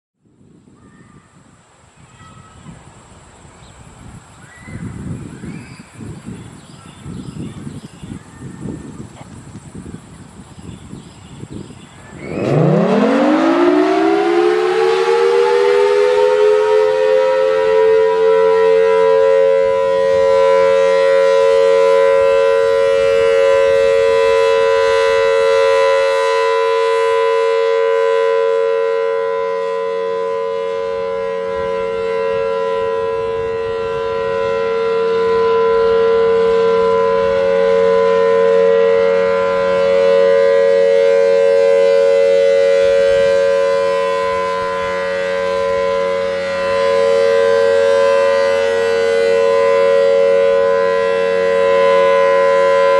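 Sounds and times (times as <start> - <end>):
warning siren steady tone: 10.8 - 52.9.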